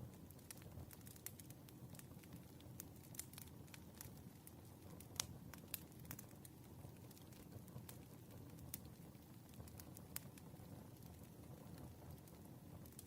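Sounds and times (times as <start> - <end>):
fire crackling and popping: 0.0 - 13.0
low steady fire rumble: 0.0 - 13.0.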